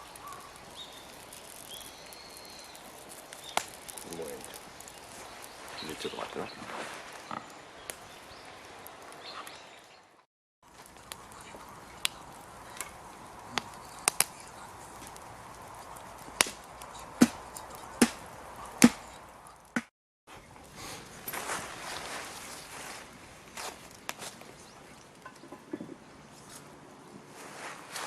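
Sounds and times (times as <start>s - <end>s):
sharp chopping knocks: 18.8s - 19.0s.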